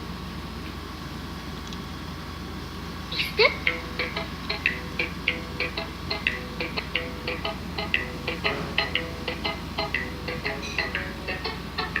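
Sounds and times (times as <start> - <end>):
low steady hum: 0.0 - 12.0
high plucked notes tune: 3.5 - 12.0.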